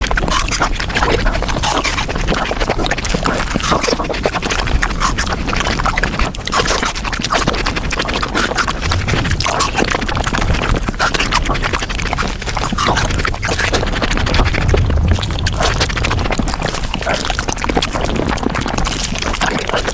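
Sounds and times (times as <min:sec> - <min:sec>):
wet chewing and slurping: 0:00.0 - 0:19.9.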